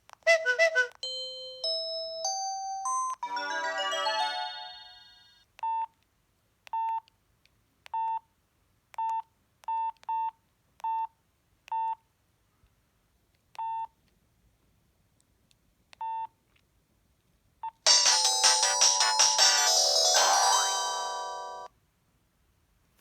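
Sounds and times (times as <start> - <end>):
polyphonic ringtone: 1.0 - 5.3, 17.9 - 21.7.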